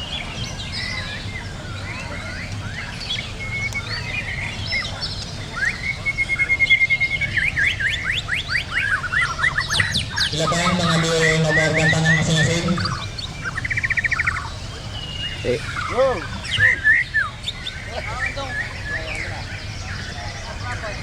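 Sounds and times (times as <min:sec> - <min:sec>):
songbirds chirping and singing: 0:00.0 - 0:21.0
bird rapid trill: 0:05.6 - 0:20.8.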